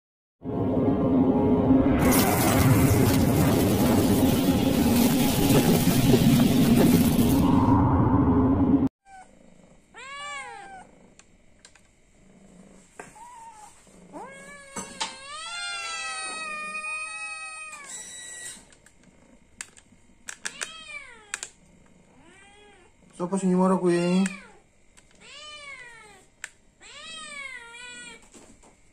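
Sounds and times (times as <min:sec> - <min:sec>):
loud noise burst: 0:00.4 - 0:08.9
cat meowing: 0:09.0 - 0:09.3, 0:09.9 - 0:10.9, 0:13.2 - 0:18.0, 0:20.5 - 0:21.4, 0:22.1 - 0:22.9, 0:23.9 - 0:24.6, 0:25.2 - 0:28.2.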